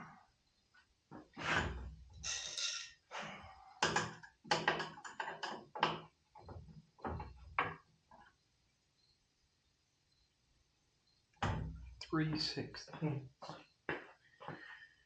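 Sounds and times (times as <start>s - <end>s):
tools knocking and clattering: 3.8s - 8.3s.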